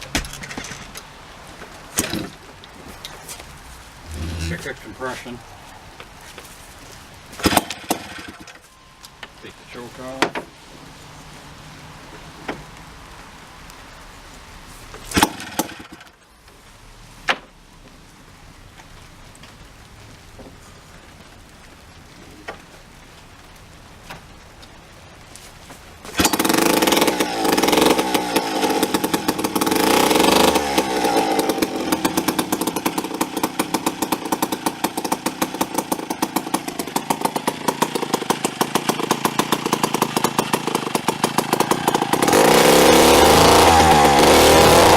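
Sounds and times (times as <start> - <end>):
chainsaw engine knocks: 0.0 - 1.1, 2.0 - 2.7, 26.1 - 44.9
chainsaw engine running: 2.0 - 2.4, 3.9 - 5.4, 7.4 - 8.6, 15.1 - 16.0, 26.1 - 44.9.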